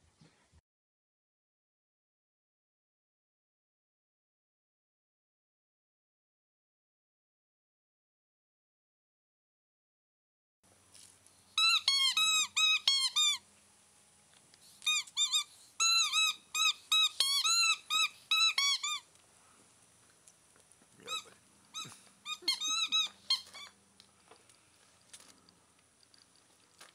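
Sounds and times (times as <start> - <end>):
squeaky dog toy squeaking: 11.6 - 13.4, 14.8 - 19.1, 21.0 - 23.8.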